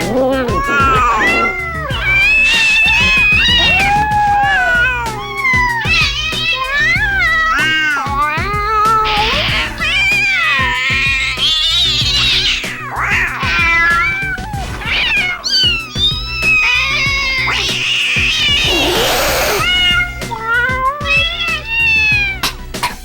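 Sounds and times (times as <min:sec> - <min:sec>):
cat meowing and yowling: 0:00.0 - 0:23.0.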